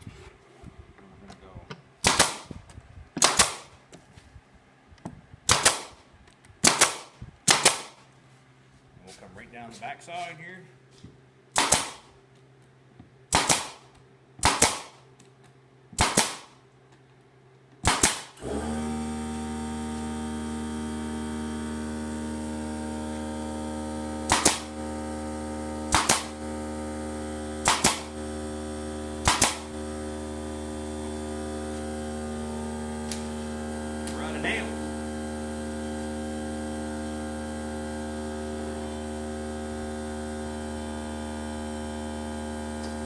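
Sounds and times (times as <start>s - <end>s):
nail gun shots: 2.0s - 2.6s, 3.2s - 3.8s, 5.5s - 6.0s, 6.6s - 8.0s, 11.6s - 12.1s, 13.3s - 15.1s, 16.0s - 16.6s, 17.8s - 18.6s, 24.2s - 24.8s, 25.9s - 26.5s, 27.6s - 28.2s, 29.2s - 29.8s
air compressor humming: 18.3s - 43.0s.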